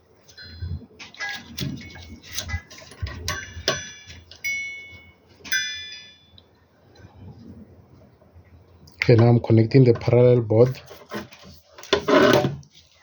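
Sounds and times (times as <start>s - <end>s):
short metallic rings: 3.2s - 6.4s.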